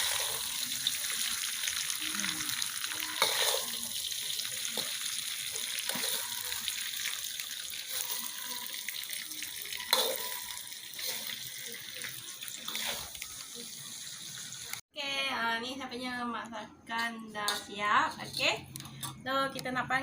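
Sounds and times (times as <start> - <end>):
fish sizzling in a pan: 0.0 - 14.8.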